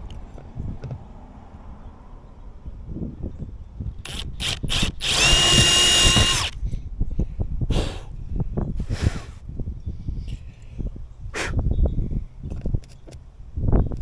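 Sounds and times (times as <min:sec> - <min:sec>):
power drill whining: 0:04.0 - 0:06.6.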